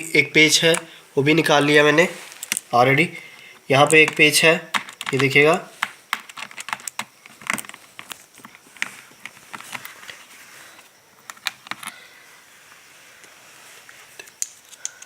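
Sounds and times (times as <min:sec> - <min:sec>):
screwdriver clicking on laptop: 0:03.8 - 0:10.0, 0:11.2 - 0:11.9.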